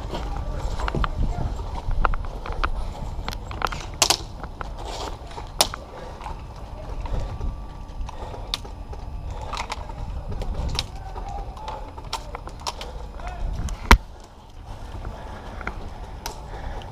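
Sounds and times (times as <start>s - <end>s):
low rumble of handling noise: 0.0s - 16.9s
sharp snaps and knocks: 2.0s - 4.7s, 5.4s - 5.8s.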